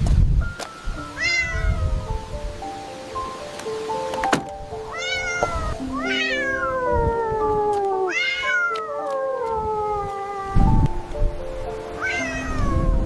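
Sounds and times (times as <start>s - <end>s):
background music of held notes: 0.2s - 13.0s
cat meowing: 1.0s - 2.1s, 4.9s - 11.0s, 12.0s - 13.0s.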